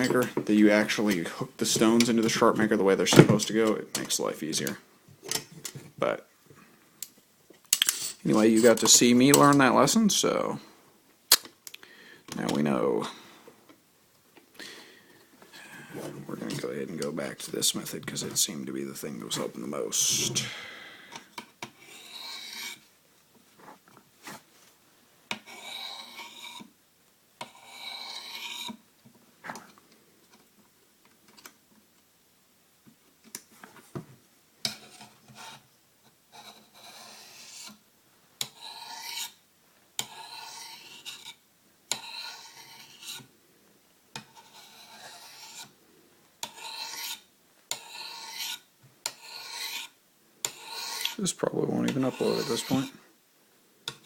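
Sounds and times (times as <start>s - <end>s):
knife scraping on ceramic stone: 21.6s - 22.8s, 25.3s - 26.7s, 27.4s - 28.8s, 34.6s - 35.6s, 36.3s - 37.8s, 38.4s - 39.4s, 40.0s - 43.3s, 44.2s - 45.7s, 46.4s - 51.2s, 51.9s - 53.0s.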